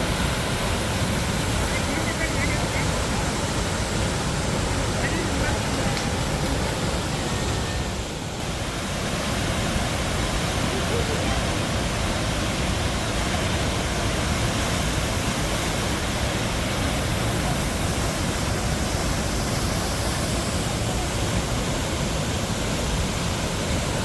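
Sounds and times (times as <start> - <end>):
waterfall rushing: 0.0 - 24.0.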